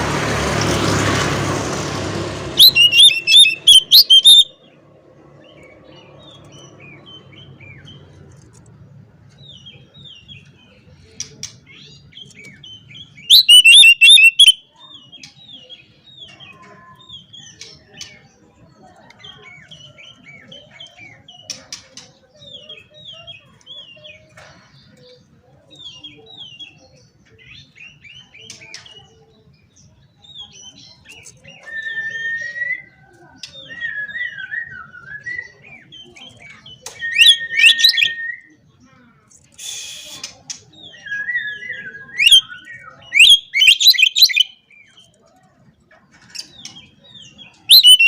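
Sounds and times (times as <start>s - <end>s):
bird singing chattering song: 2.5s - 48.0s
bird whistling notes: 2.6s - 4.6s, 13.2s - 14.6s, 36.8s - 38.5s, 40.9s - 44.6s, 47.7s - 48.0s.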